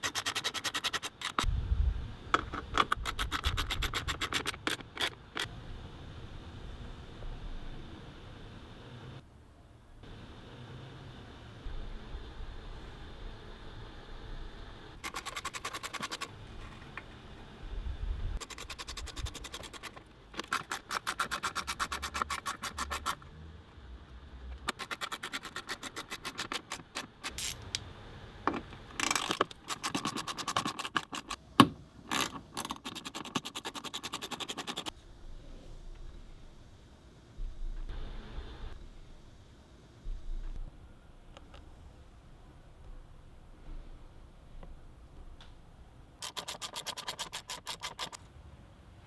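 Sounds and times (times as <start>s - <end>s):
ratchet wrench clicking: 2.4s - 5.5s, 24.7s - 27.7s.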